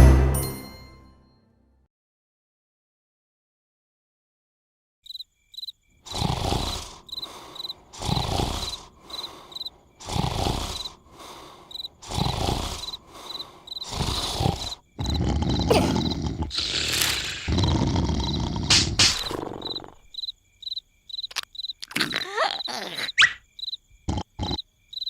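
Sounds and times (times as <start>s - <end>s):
crickets chirping: 5.0s - 25.0s
cartoon snoring: 6.0s - 20.1s, 21.8s - 23.4s, 24.0s - 24.6s.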